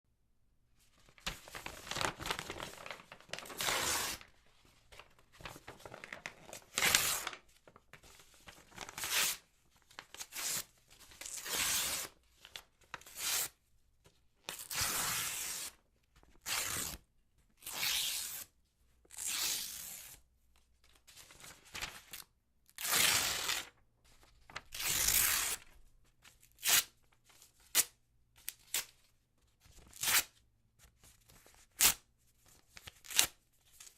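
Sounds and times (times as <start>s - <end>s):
paper rustling: 0.9s - 10.3s, 21.2s - 22.1s, 23.4s - 24.7s
paper tearing: 1.2s - 4.2s.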